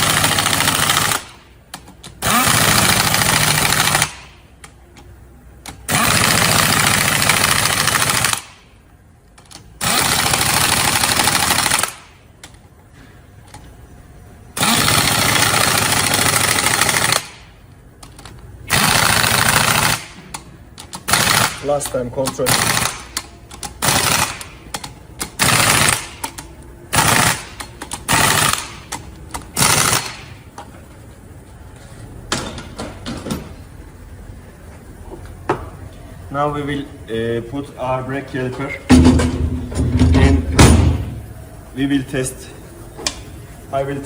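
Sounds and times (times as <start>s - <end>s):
power wrench running: 0.0s - 1.4s, 2.1s - 4.3s, 5.8s - 8.6s, 9.8s - 12.1s, 14.6s - 17.5s, 18.6s - 30.4s.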